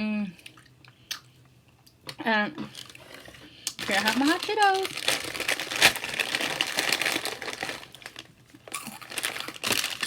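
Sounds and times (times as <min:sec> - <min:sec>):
snack bag crinkling: 0:02.7 - 0:10.0.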